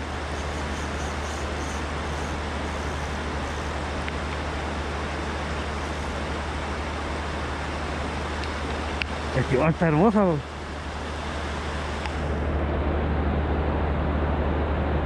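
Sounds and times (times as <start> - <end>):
river water rushing: 0.0 - 12.3.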